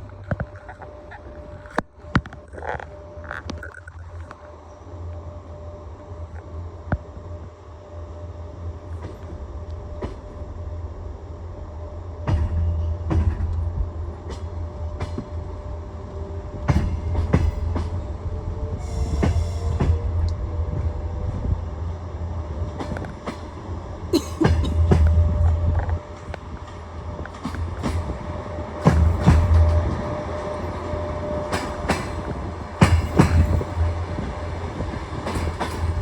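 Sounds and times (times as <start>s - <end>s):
train low rumble: 0.0s - 36.0s
train wheels clacking: 12.2s - 15.5s, 16.6s - 18.1s, 18.9s - 20.1s, 24.2s - 36.0s.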